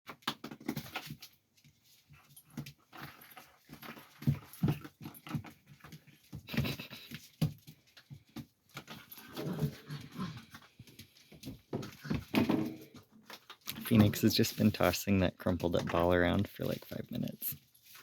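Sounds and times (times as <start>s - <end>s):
puppies playing and crying: 4.5s - 12.3s.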